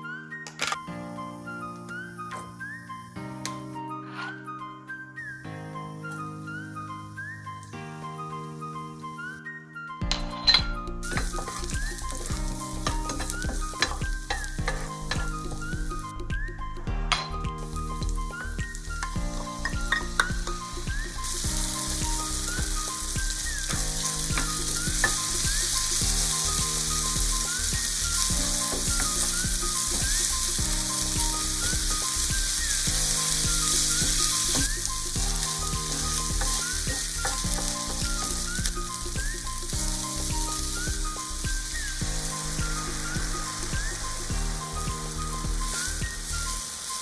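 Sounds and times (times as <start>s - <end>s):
background music: 0.0s - 47.0s
food sizzling in a pan: 10.1s - 47.0s.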